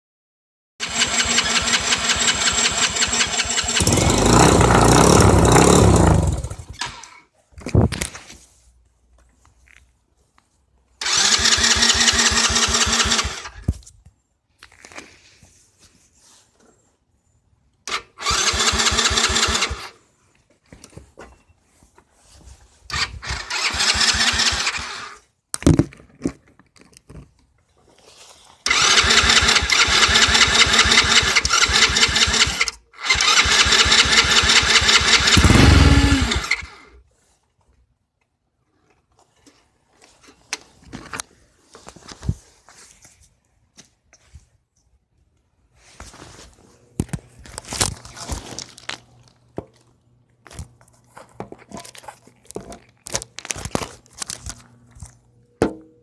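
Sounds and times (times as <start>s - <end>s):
engine starter cranking: 0.8s - 7.2s, 11.0s - 13.7s, 17.9s - 20.0s, 22.9s - 25.2s, 28.7s - 37.0s
engine running unevenly: 3.7s - 6.7s.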